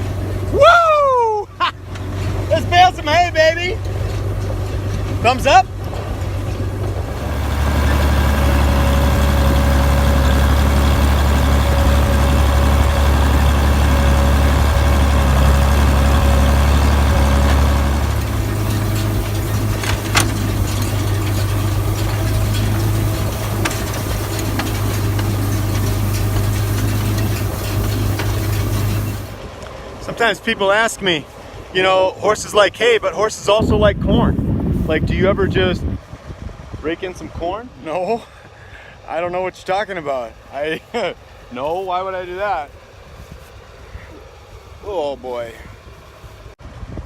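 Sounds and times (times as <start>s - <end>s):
tractor engine running: 0.0s - 34.3s.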